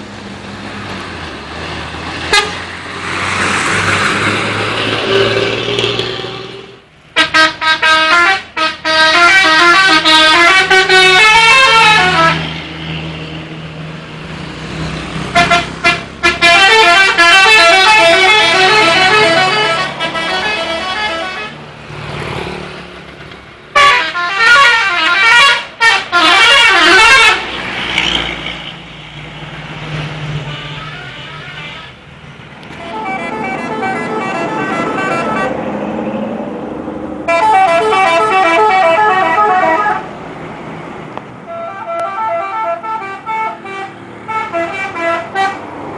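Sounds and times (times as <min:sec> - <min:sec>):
multi-tone musical bus horn: 0:02.2 - 0:02.7, 0:05.0 - 0:12.5, 0:15.3 - 0:21.6, 0:23.7 - 0:27.6, 0:30.2 - 0:35.6, 0:37.2 - 0:40.1, 0:41.5 - 0:45.7.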